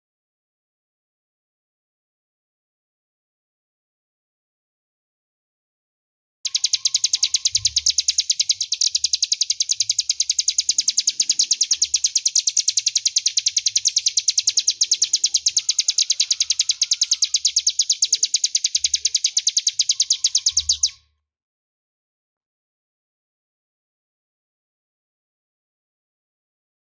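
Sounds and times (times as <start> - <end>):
bird singing fast trill: 6.5 - 21.0.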